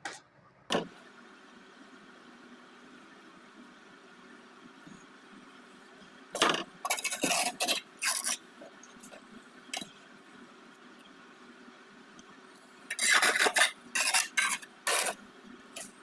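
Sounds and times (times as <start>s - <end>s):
scraping on brick: 6.4s - 8.4s, 12.9s - 15.2s.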